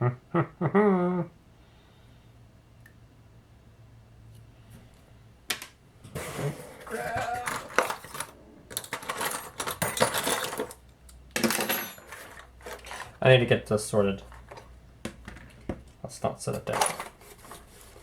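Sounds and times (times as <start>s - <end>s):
small metal tools clattering: 6.8s - 13.2s, 14.2s - 14.7s, 16.5s - 18.0s.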